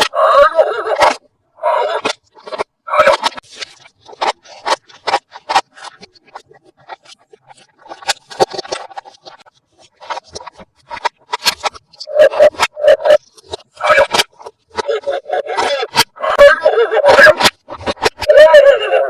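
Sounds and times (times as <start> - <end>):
packaging crinkling and scraping: 2.0 - 14.9.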